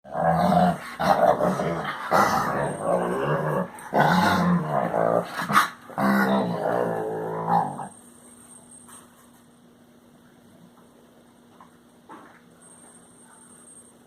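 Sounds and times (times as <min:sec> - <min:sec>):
dog grumbling: 0:00.1 - 0:07.9.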